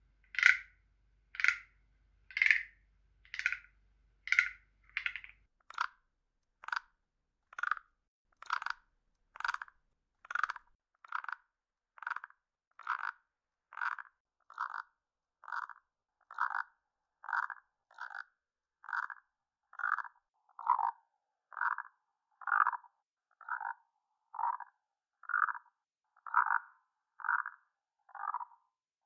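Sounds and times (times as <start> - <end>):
synthesized frog croaks: 0.3 - 0.7, 1.4 - 1.7, 2.3 - 2.7, 3.3 - 3.7, 4.3 - 5.3, 13.8 - 28.7.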